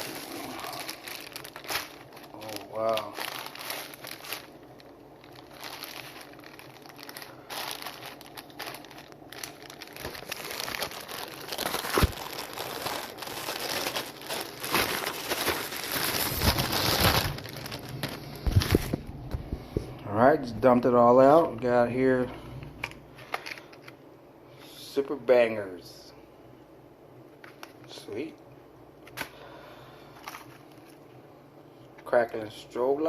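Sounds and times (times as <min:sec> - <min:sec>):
packaging crinkling and rustling: 0:00.0 - 0:19.9, 0:30.1 - 0:31.1.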